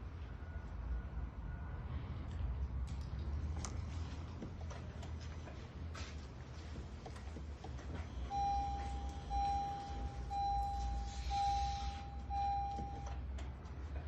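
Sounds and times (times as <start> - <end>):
low steady hum: 6.5 - 14.0
long electronic beeps: 8.3 - 13.1.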